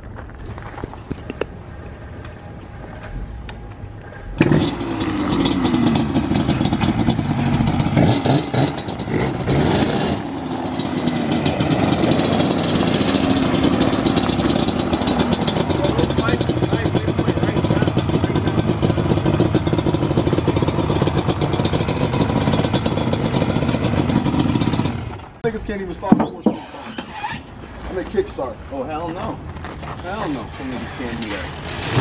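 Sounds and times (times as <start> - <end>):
two-stroke engine running: 4.4 - 25.4.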